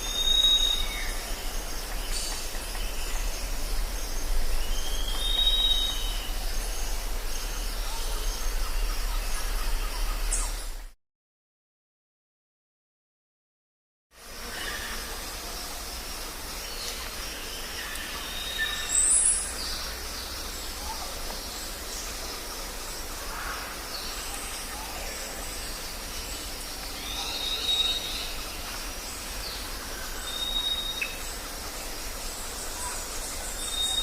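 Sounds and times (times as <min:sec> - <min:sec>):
birds whistling and chirping: 0:00.0 - 0:01.2, 0:04.6 - 0:06.9, 0:29.5 - 0:31.3, 0:32.8 - 0:34.0
steady high hiss: 0:00.0 - 0:10.9, 0:14.2 - 0:34.0.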